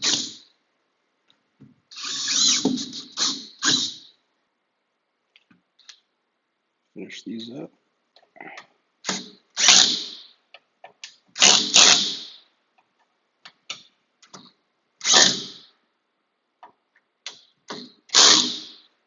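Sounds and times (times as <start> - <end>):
small clicks and taps: 5.3 - 6.0, 12.7 - 14.6.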